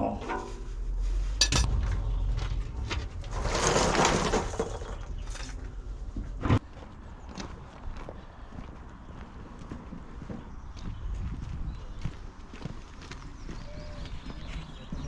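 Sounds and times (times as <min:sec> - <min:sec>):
metal tools clinking: 0:01.4 - 0:01.7.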